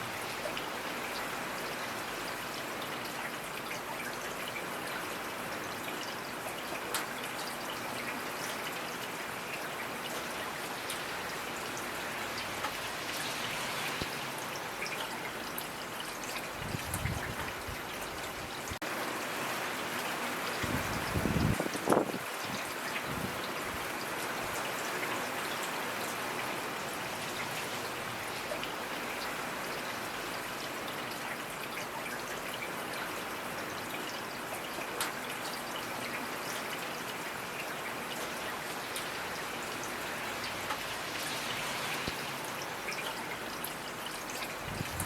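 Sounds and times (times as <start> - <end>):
rain hissing: 11.9 - 14.8, 39.2 - 45.0.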